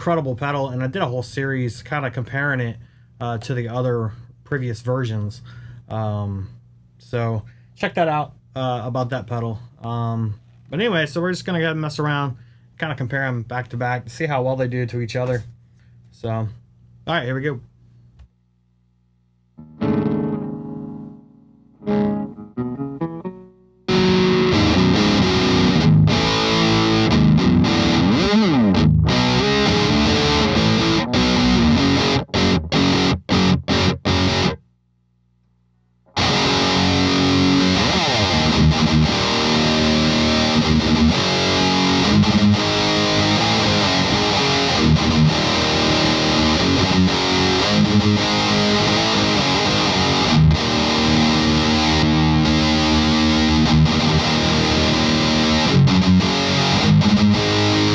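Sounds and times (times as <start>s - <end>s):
low amp hum: 0.0s - 57.9s
distorted electric guitar riffing: 19.6s - 21.2s, 21.8s - 34.6s, 36.1s - 57.9s.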